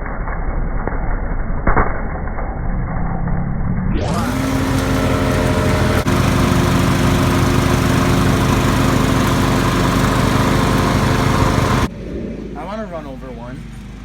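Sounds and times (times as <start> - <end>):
lawn mower engine running: 4.0 - 11.9.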